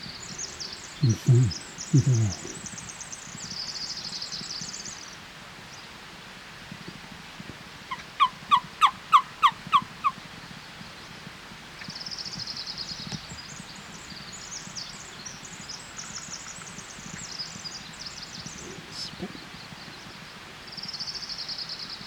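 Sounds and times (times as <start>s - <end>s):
small birds chirping: 0.0s - 4.8s.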